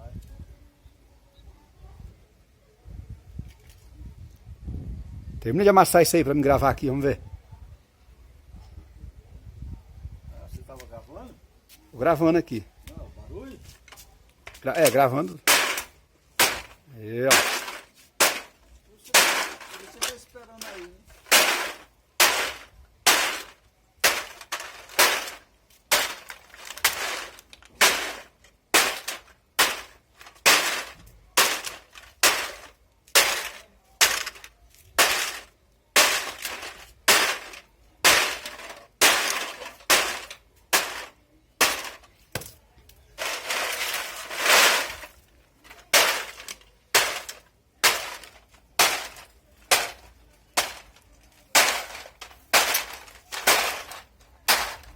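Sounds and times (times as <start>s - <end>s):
drink cans being crushed: 14.9s - 42.5s, 43.2s - 54.9s.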